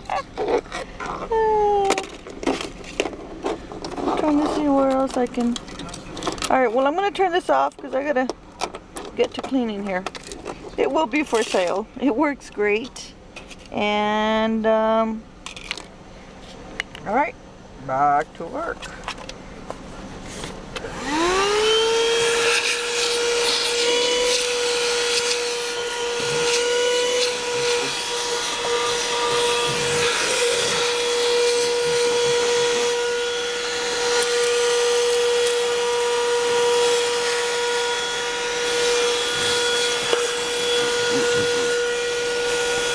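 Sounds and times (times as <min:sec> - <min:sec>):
handheld vacuum motor whining: 0:00.0 - 0:05.6, 0:20.4 - 0:42.9.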